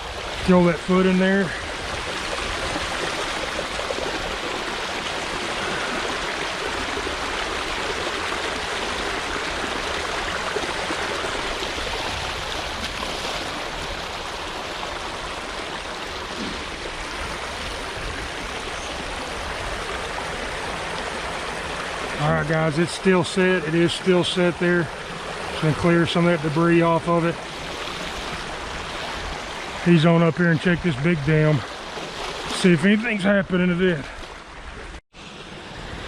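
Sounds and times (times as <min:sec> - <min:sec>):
creek water rushing over dam: 0:00.0 - 0:36.0.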